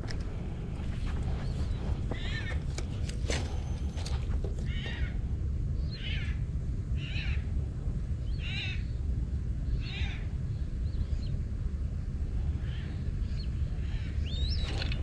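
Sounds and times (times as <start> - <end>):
low rumble: 0.0 - 15.0
bird mewing calls: 1.3 - 7.5, 8.3 - 9.0.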